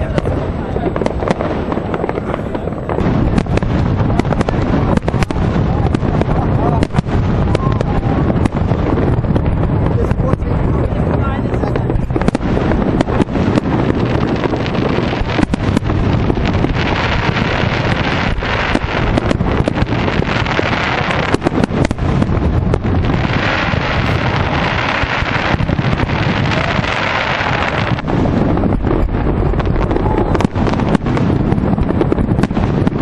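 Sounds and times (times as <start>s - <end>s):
fireworks bangs: 0.0s - 33.0s
wind noise on microphone: 0.0s - 33.0s.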